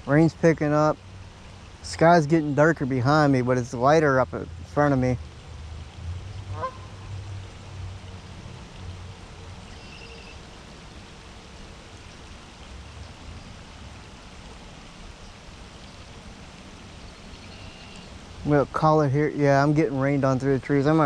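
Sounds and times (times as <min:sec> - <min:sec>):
rain falling through trees: 0:00.0 - 0:21.0
bird calls: 0:06.5 - 0:07.1, 0:09.6 - 0:10.4, 0:17.0 - 0:18.2.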